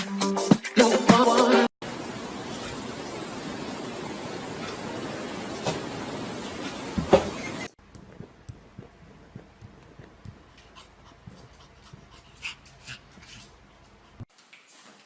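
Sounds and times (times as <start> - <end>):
dog panting: 8.1 - 14.3.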